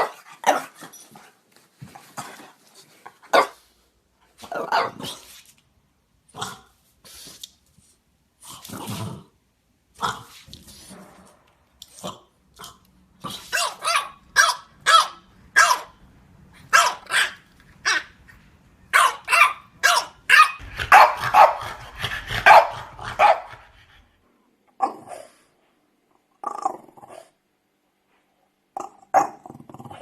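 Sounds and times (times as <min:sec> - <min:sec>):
dog barking: 0:03.3 - 0:03.6, 0:04.5 - 0:05.1, 0:13.4 - 0:16.0, 0:16.7 - 0:18.1, 0:18.9 - 0:23.6.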